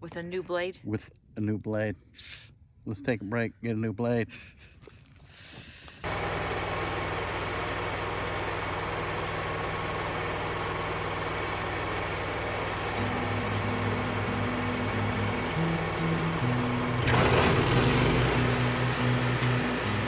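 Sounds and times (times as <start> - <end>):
engine idling: 6.0 - 20.0.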